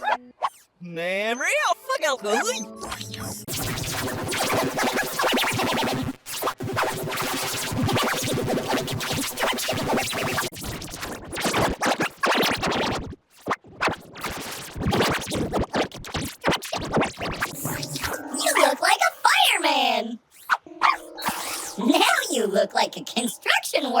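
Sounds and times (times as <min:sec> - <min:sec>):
electronic music: 0:01.4 - 0:03.7, 0:17.4 - 0:19.4, 0:20.7 - 0:24.0
record scratching: 0:01.4 - 0:05.7, 0:14.3 - 0:19.4, 0:20.3 - 0:24.0.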